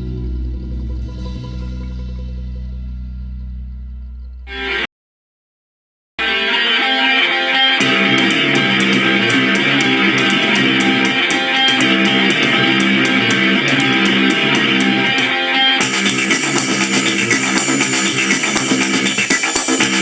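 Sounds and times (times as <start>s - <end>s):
guitar-led band music: 4.5s - 4.9s, 6.2s - 20.0s
ticking beat: 7.7s - 20.0s.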